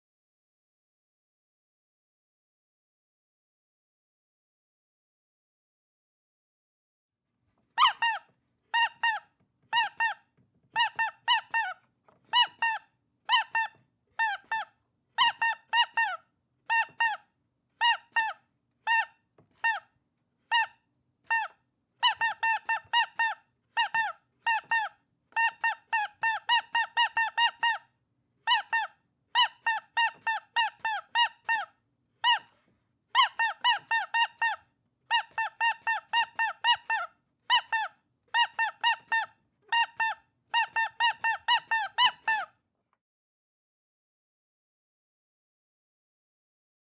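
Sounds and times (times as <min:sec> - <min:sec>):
rubber duck toy squeaks: 0:07.7 - 0:42.6.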